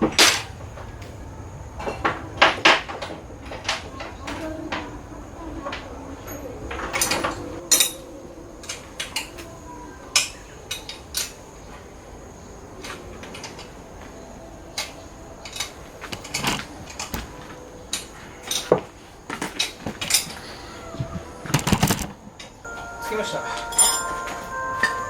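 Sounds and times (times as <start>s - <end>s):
metal tools clinking: 23.6s - 25.0s.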